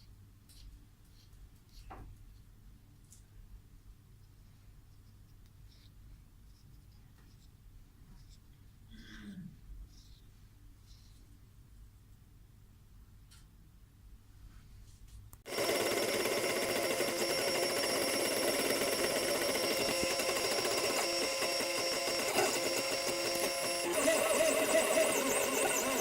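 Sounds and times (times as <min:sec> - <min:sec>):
stepper motors whining: 0:15.5 - 0:26.0.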